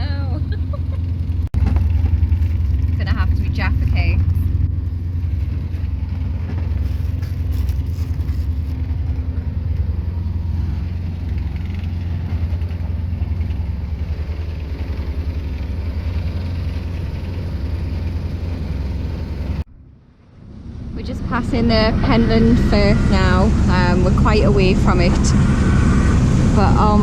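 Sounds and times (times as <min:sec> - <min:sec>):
boat engine droning: 0:00.0 - 0:27.0.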